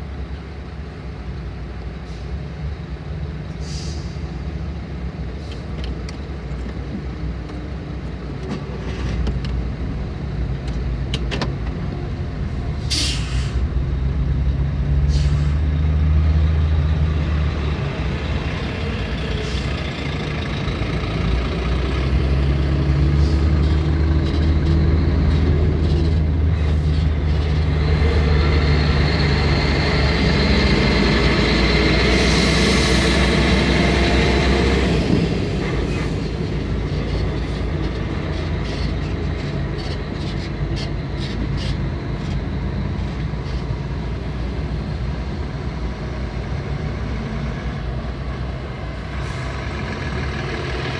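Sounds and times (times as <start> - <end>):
truck diesel engines revving: 0.0 - 50.9
air brake hiss: 3.6 - 4.4, 12.8 - 13.7, 15.0 - 15.6.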